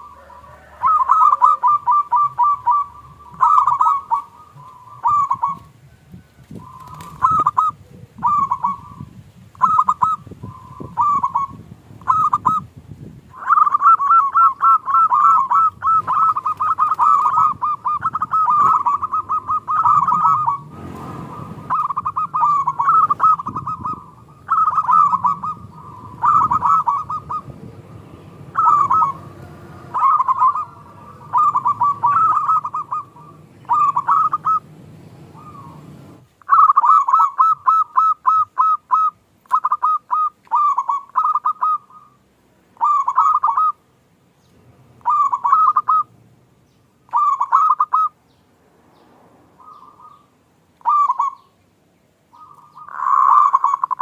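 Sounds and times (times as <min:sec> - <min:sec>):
doves cooing: 0:00.0 - 0:43.8, 0:44.6 - 0:46.3, 0:47.1 - 0:48.2, 0:49.6 - 0:51.6, 0:52.3 - 0:54.0.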